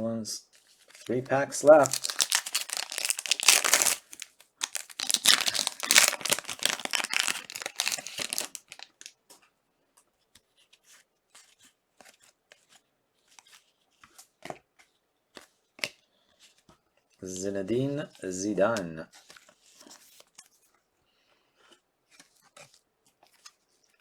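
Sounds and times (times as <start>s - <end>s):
wrapper tearing and crinkling: 0.9s - 9.1s.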